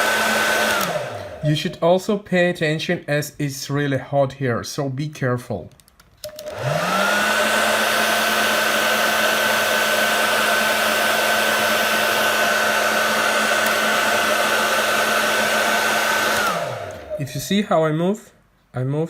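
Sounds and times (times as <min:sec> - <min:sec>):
hot-air blower motor running: 0:00.0 - 0:01.6, 0:06.3 - 0:17.4.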